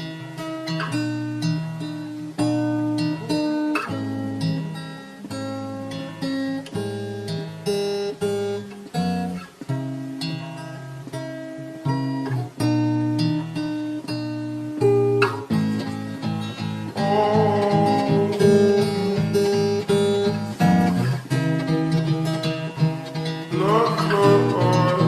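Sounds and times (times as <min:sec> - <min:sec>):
acoustic guitar picking chords: 0:00.0 - 0:25.0
held melody line: 0:09.3 - 0:25.0.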